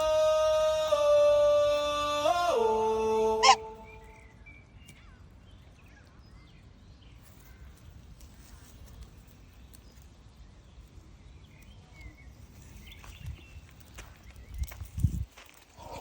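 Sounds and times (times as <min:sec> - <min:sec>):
low rumble of background noise: 0:00.0 - 0:16.0
high bird chirps: 0:03.4 - 0:05.2.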